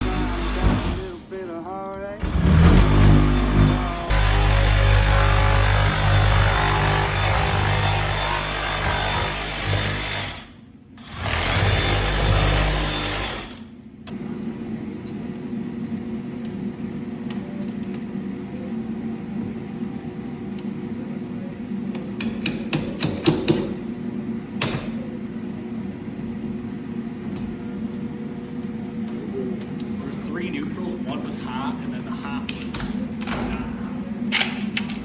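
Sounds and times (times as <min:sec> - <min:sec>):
loud power tool: 0:00.0 - 0:01.3, 0:02.2 - 0:13.7
steady machine hum: 0:00.0 - 0:22.0, 0:23.7 - 0:35.0.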